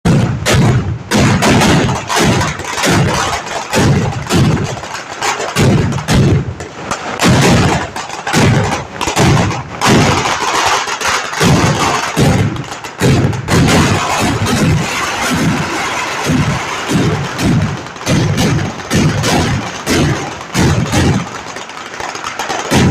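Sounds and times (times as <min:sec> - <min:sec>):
fireworks exploding: 0:00.1 - 0:22.9.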